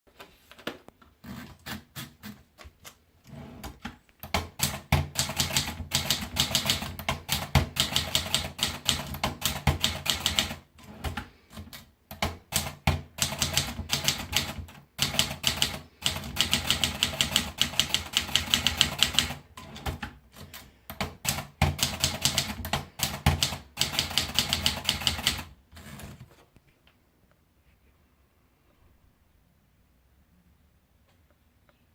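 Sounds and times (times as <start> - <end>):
manual typewriter key strikes: 4.2 - 11.2.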